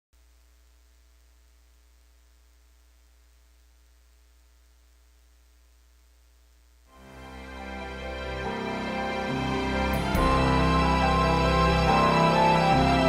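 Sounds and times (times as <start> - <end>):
low electrical hum: 0.2 - 8.3.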